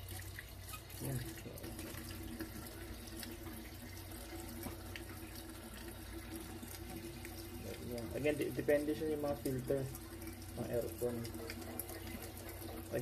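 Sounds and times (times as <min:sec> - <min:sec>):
faint steady hum: 0:00.0 - 0:13.0
tap water running into sink: 0:00.0 - 0:13.0.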